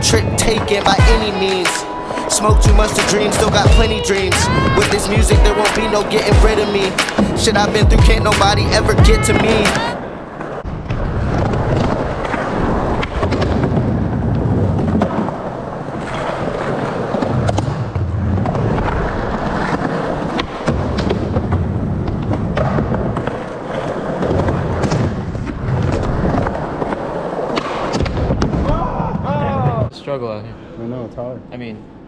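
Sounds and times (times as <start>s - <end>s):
skateboard wheels rolling: 4.3s - 29.1s
skateboard clacks: 14.7s - 28.6s.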